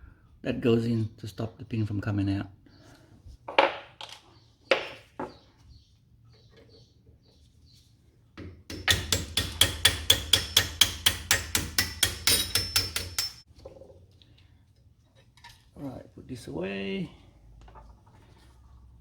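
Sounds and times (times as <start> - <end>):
hammer tapping metal pin: 8.7 - 13.4.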